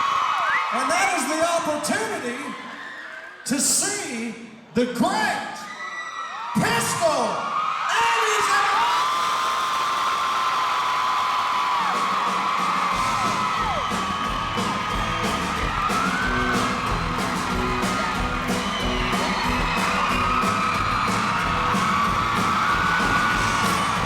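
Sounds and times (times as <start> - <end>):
crowd cheering and whistling: 0.0 - 3.7, 5.6 - 24.0
concert music: 11.8 - 24.0.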